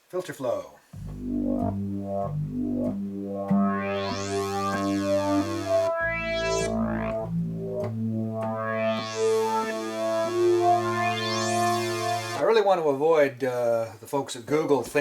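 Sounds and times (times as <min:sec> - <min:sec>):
synthesizer chords with filter sweeps: 0:01.0 - 0:12.4.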